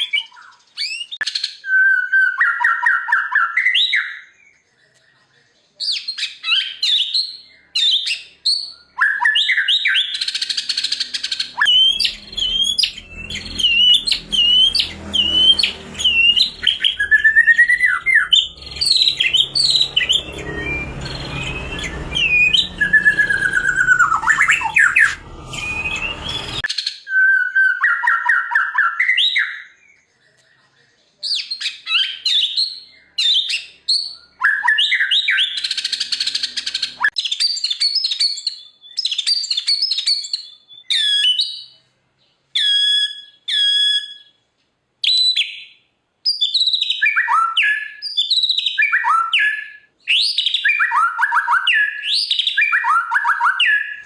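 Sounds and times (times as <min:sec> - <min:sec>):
bird singing whistled song: 0:00.0 - 0:05.2, 0:05.8 - 0:30.0, 0:31.2 - 0:41.8, 0:42.5 - 0:44.4, 0:45.0 - 0:54.0
low background rumble: 0:10.7 - 0:26.6.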